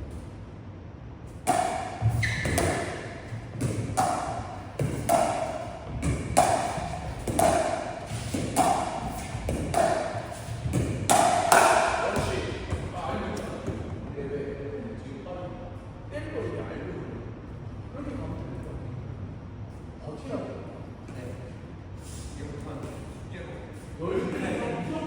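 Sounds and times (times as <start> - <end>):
ball bouncing: 1.4 - 14.0
paddles hitting plastic ball: 3.6 - 12.8.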